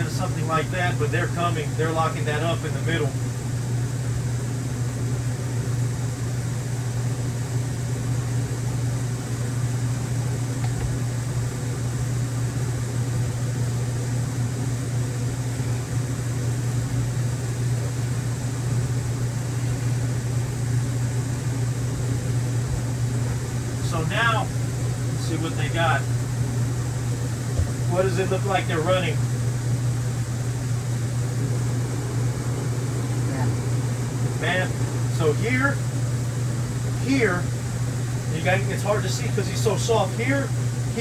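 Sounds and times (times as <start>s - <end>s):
steady low hum with hiss: 0.0s - 41.0s.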